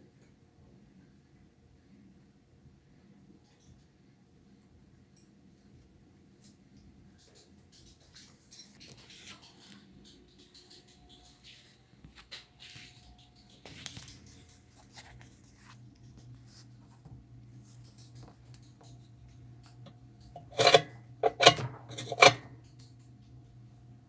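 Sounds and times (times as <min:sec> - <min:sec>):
tools clicking and rustling: 0:20.3 - 0:22.8.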